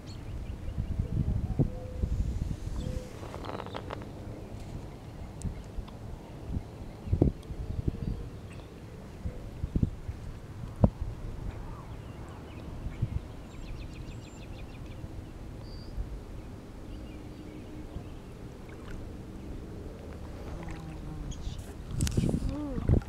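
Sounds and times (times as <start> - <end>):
wind: 0.0 - 23.0
water rumbling: 2.2 - 13.8, 17.8 - 23.0.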